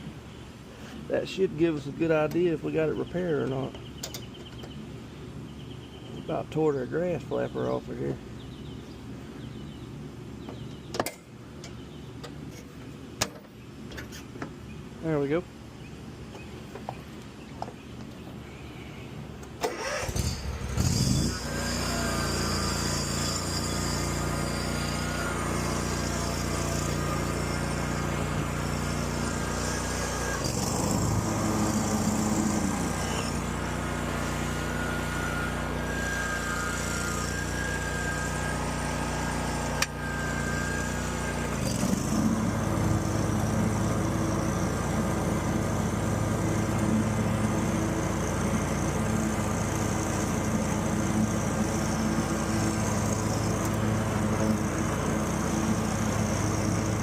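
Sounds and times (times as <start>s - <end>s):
mower engine running: 19.6s - 57.0s.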